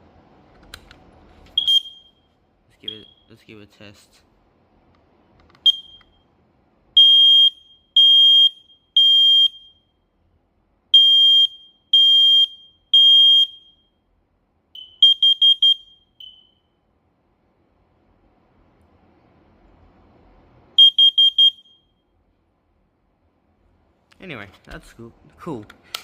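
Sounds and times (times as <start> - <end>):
smoke alarm beeping: 1.6 - 3.3, 5.6 - 6.3, 7.0 - 10.1, 11.0 - 14.0, 14.8 - 16.8, 20.8 - 22.1
smoke alarm chirps: 1.6 - 3.4, 5.6 - 6.2, 7.0 - 10.1, 11.0 - 14.0, 14.8 - 16.8, 20.8 - 22.1.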